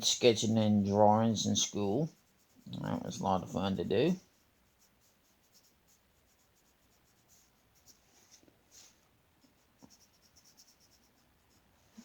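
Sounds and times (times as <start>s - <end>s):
pencil scratching on paper: 0.3s - 12.0s.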